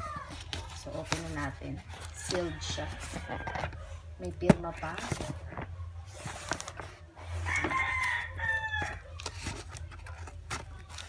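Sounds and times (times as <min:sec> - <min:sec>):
rooster crowing: 0:07.4 - 0:09.2.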